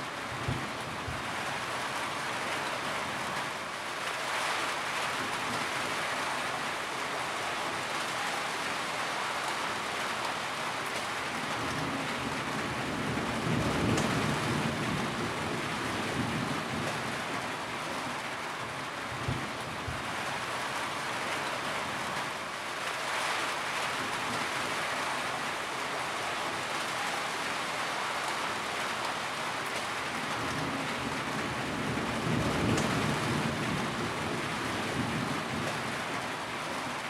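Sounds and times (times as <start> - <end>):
steady rain: 0.0 - 37.0
thunder rumbling: 12.6 - 17.1, 30.4 - 35.9.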